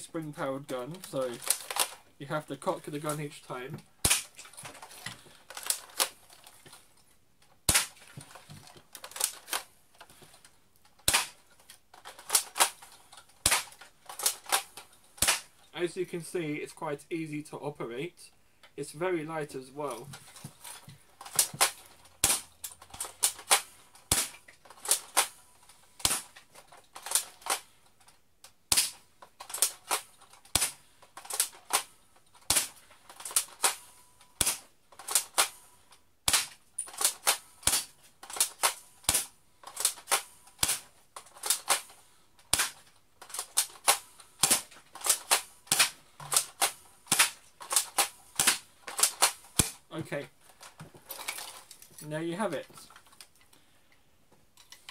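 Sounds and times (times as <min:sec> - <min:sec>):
airsoft rifle cocked and fired: 0:01.2 - 0:02.0, 0:04.0 - 0:04.6, 0:07.6 - 0:08.3, 0:11.0 - 0:11.4, 0:12.0 - 0:15.5, 0:21.2 - 0:25.4, 0:26.0 - 0:27.7, 0:28.7 - 0:35.6, 0:36.2 - 0:41.9, 0:42.5 - 0:49.8.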